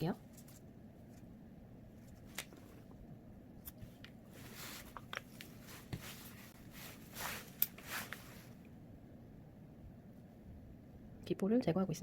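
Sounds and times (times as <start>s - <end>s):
soft rustles: 3.8s - 8.7s.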